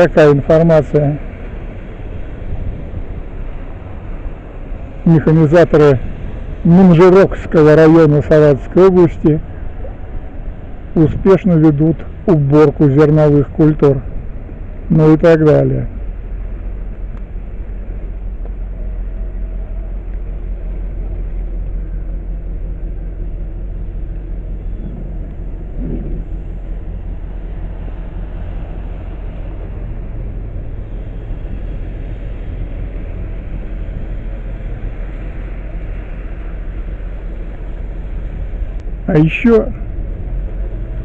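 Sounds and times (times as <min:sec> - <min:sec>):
street ambience rumble: 0:00.0 - 0:41.0.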